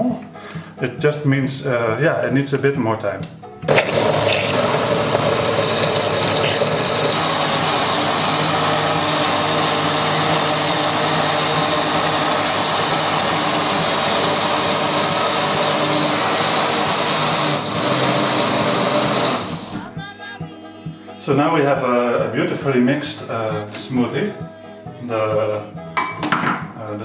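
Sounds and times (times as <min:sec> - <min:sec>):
blender motor running: 0:03.7 - 0:19.8.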